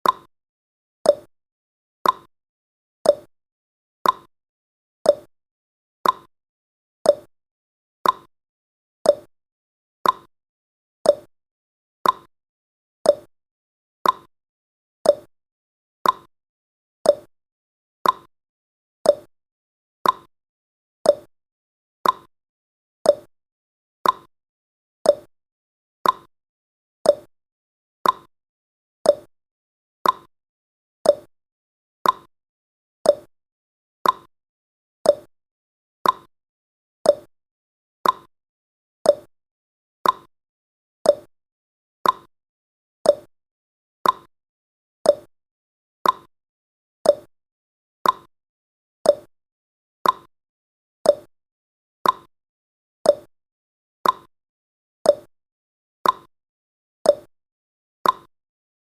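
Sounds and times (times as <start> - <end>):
clock ticking tick-tock: 0.0 - 0.3, 1.1 - 1.3, 2.0 - 2.3, 3.1 - 3.3, 4.0 - 4.3, 5.1 - 5.3, 6.0 - 6.3, 7.1 - 7.3, 8.0 - 8.3, 9.1 - 9.3, 10.0 - 10.3, 11.1 - 11.3, 12.0 - 12.3, 13.0 - 13.3, 14.0 - 14.3, 15.0 - 15.3, 16.0 - 16.3, 17.0 - 17.3, 18.0 - 18.3, 19.0 - 19.3, 20.0 - 20.3, 21.0 - 21.3, 22.0 - 22.3, 23.0 - 23.3, 24.0 - 24.3, 25.0 - 25.3, 26.0 - 26.3, 27.0 - 27.3, 28.0 - 28.3, 29.0 - 29.3, 30.0 - 30.3, 31.0 - 31.3, 32.0 - 32.3, 33.0 - 33.3, 34.0 - 34.3, 35.0 - 35.3, 36.0 - 36.3, 37.0 - 37.3, 38.0 - 38.3, 39.0 - 39.3, 40.0 - 40.3, 41.0 - 41.3, 42.0 - 42.3, 43.0 - 43.3, 44.0 - 44.3, 45.0 - 45.3, 46.0 - 46.3, 47.0 - 47.3, 48.0 - 48.3, 49.1 - 49.3, 50.0 - 50.3, 51.1 - 51.3, 52.0 - 52.3, 53.1 - 53.3, 54.0 - 54.3, 55.1 - 55.3, 56.0 - 56.3, 57.1 - 57.3, 58.0 - 58.3.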